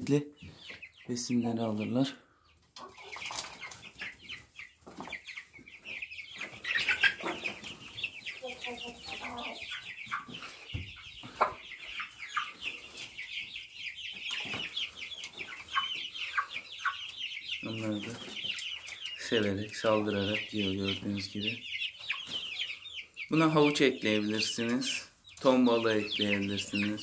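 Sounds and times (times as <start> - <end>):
chickens clucking: 0.0 - 27.0
high short peeping calls: 0.2 - 27.0.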